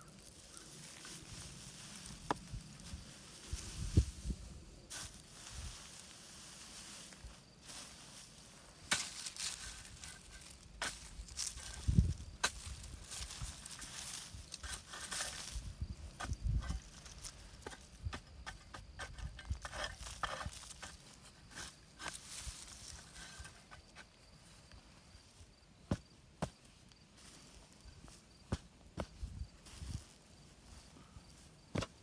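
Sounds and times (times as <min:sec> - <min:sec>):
digging and rustling in soil: 0:00.0 - 0:32.0
dull thump: 0:25.9 - 0:26.6.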